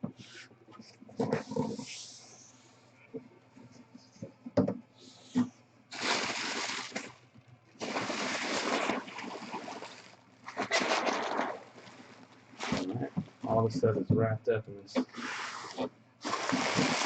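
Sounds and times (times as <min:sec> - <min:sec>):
bubble wrap rustling and crinkling: 0:05.9 - 0:07.2, 0:07.8 - 0:13.6, 0:15.0 - 0:17.0.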